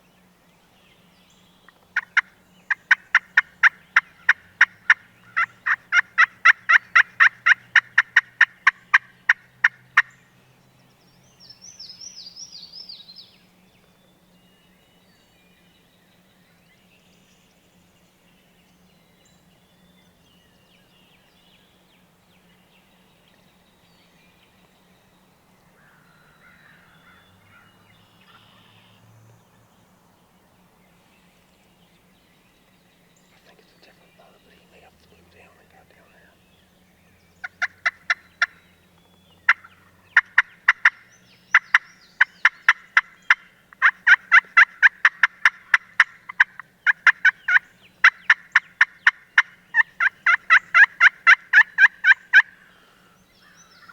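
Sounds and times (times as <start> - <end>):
turkey yelps: 42.4 - 52.5.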